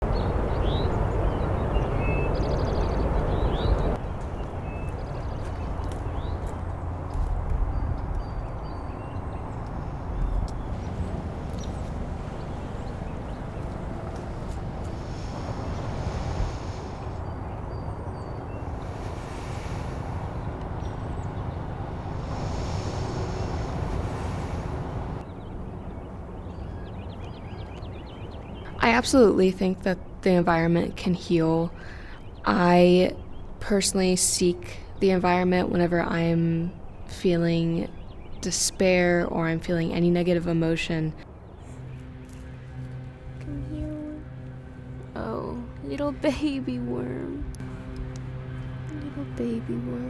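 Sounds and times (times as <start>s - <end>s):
steady low rumble: 0.0s - 29.3s, 38.0s - 50.0s.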